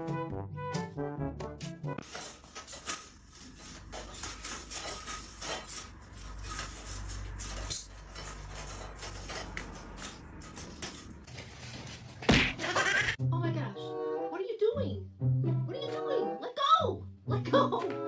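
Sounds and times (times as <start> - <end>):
brass music: 0.0 - 2.0, 13.2 - 14.5.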